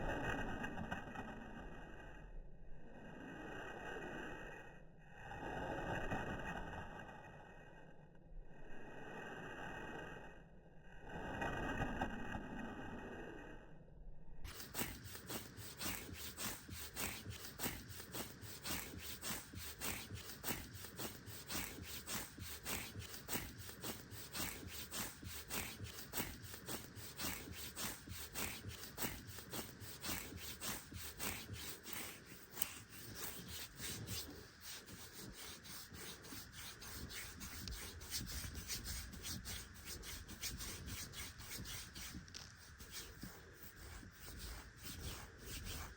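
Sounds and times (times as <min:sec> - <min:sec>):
fingernails scratching skin: 0:14.5 - 0:45.9.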